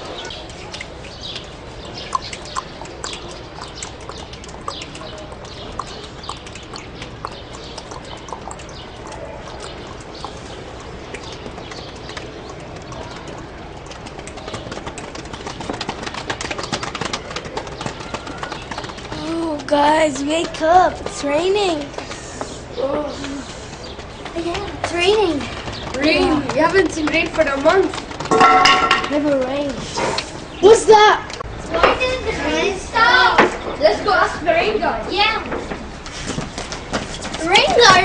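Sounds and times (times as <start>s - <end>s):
birds chirping: 0.0s - 38.0s
rain drops pattering: 0.3s - 21.9s.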